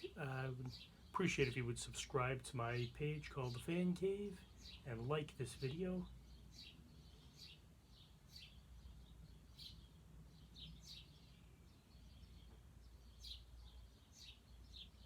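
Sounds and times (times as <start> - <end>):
low steady hum: 0.0 - 7.9
faint bird chirps: 0.0 - 15.0.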